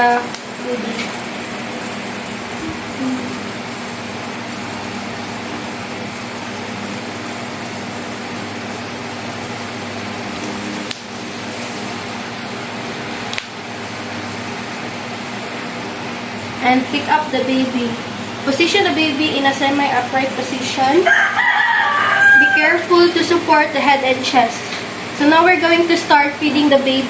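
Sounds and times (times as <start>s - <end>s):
ventilation hum: 0.0s - 27.0s.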